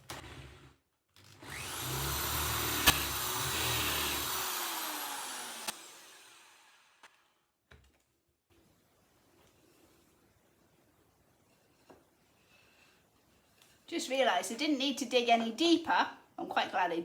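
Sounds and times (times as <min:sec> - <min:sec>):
power drill drilling into wood: 0:01.3 - 0:07.2.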